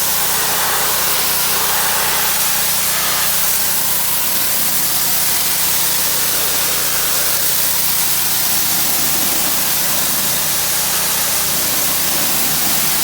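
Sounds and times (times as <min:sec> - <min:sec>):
pressure washer motor droning: 0:00.0 - 0:13.0
water spray hissing: 0:00.0 - 0:13.0.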